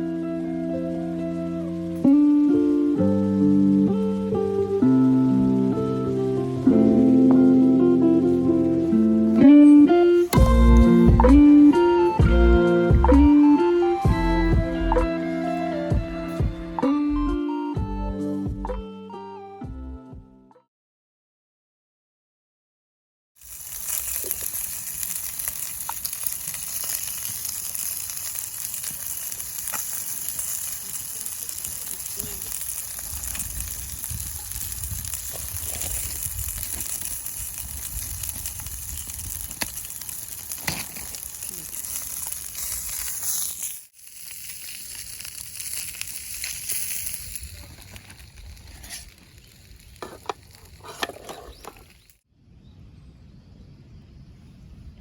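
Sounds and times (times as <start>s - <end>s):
food frying: 23.4s - 52.2s.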